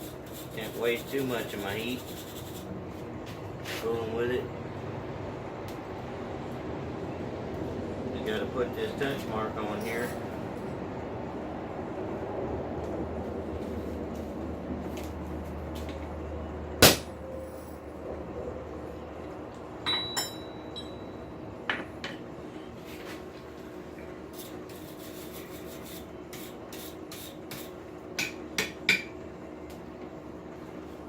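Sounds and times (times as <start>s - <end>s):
steady low hum: 0.0s - 31.0s
hammer striking steel stamp: 16.8s - 17.1s, 19.9s - 21.0s, 28.2s - 29.1s
light metal knocks and clinks: 19.9s - 22.2s.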